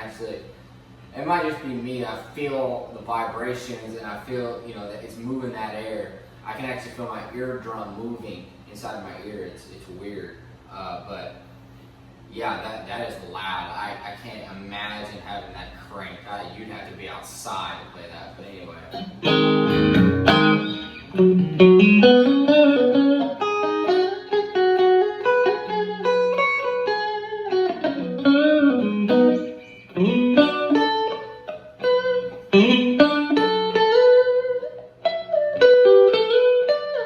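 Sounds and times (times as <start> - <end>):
electric guitar lead lines: 18.8 - 37.0.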